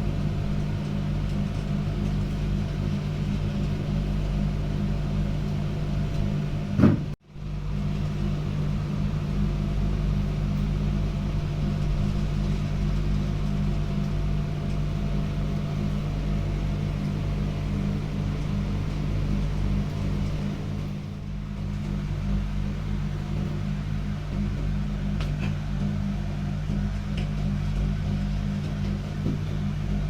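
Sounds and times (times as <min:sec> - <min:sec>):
low mechanical hum: 0:00.0 - 0:30.0.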